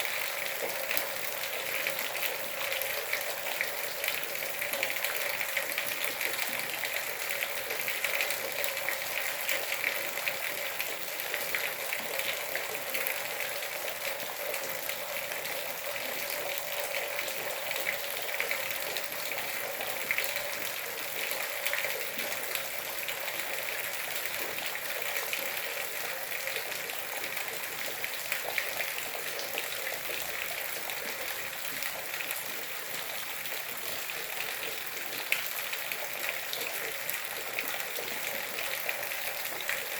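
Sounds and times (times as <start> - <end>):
steady rain falling: 0.0 - 27.3.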